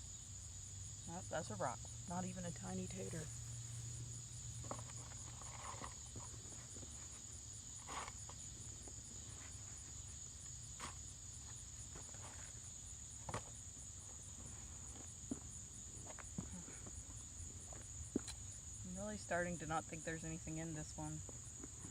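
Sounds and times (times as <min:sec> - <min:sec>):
hand tool digging through soil: 0:04.6 - 0:08.4.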